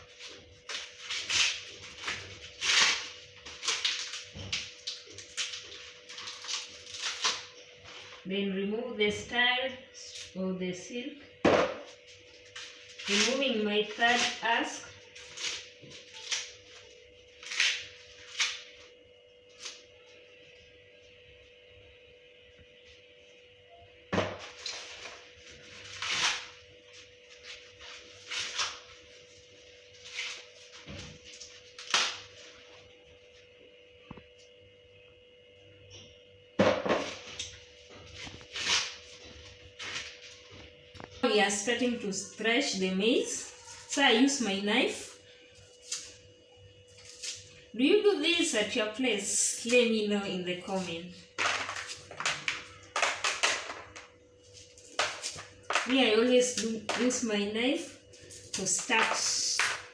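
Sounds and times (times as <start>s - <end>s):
corn husks tearing: 0.0s - 7.6s
corn husk rustling and tearing: 0.0s - 8.2s, 24.5s - 32.7s, 38.1s - 40.6s.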